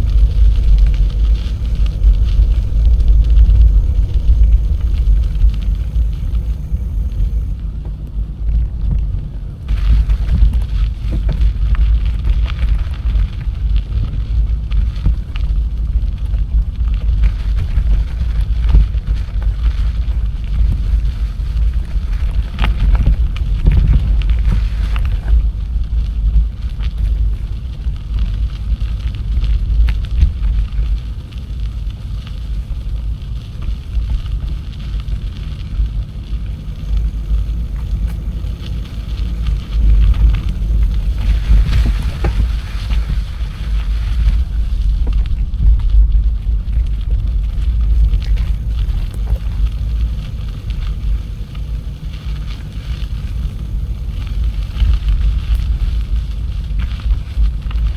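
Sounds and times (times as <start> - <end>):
wind buffeting microphone: 0.0 - 7.8, 28.3 - 57.9.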